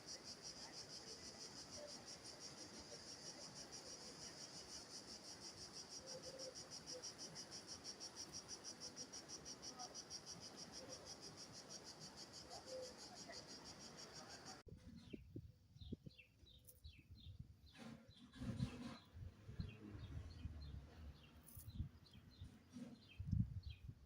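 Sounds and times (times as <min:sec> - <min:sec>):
insects chirping: 0:00.0 - 0:14.7.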